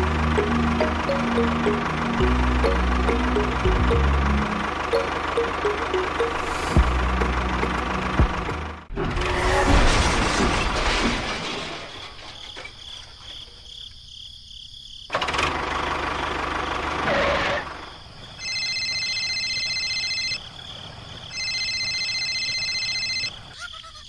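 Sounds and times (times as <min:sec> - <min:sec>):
long high electronic tones: 0:00.0 - 0:08.2.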